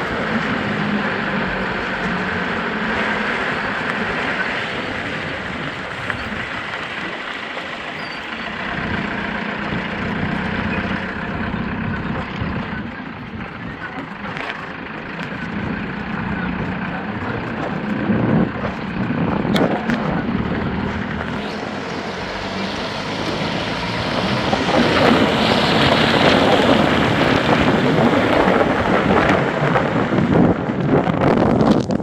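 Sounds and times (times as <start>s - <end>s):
road noise: 0.0s - 32.0s
truck engine: 0.0s - 32.0s
wind on microphone: 8.6s - 32.0s.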